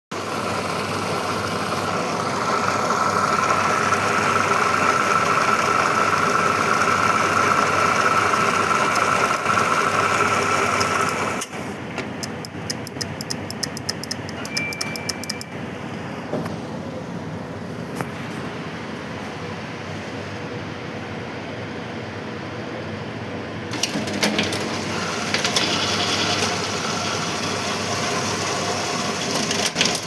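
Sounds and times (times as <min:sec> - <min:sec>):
strapping machine motor humming: 0:01.0 - 0:16.0
fast sharp ticks: 0:12.2 - 0:15.6.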